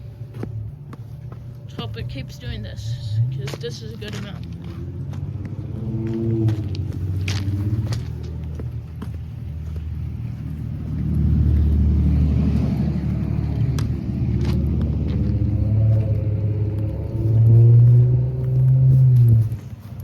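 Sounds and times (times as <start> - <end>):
vehicle engine running: 0.0 - 20.0.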